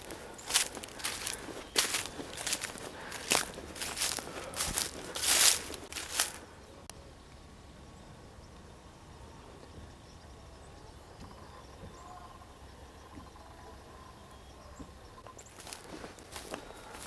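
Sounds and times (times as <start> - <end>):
footsteps crunching on forest floor: 0.0 - 6.5, 15.4 - 17.0.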